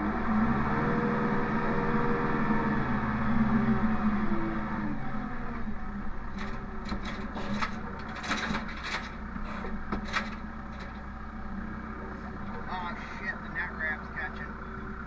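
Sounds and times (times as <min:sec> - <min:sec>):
engine running low: 0:00.0 - 0:15.0
hay bales creaking and scraping: 0:06.5 - 0:11.1.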